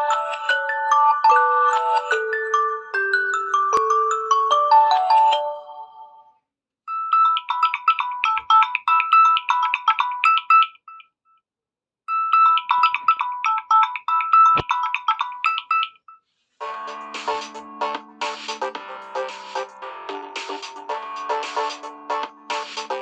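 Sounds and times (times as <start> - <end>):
lower fuller ringtone tune: 0.0 - 6.3, 16.6 - 23.0
ringtone melody of high notes: 0.0 - 6.3, 16.6 - 23.0.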